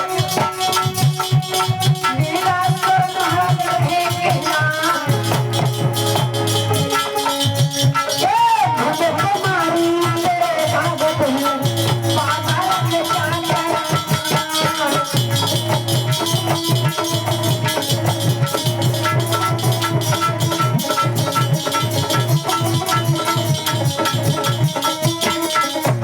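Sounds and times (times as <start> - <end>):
hand drum beat: 0.0 - 26.0
rattling percussion: 0.0 - 26.0.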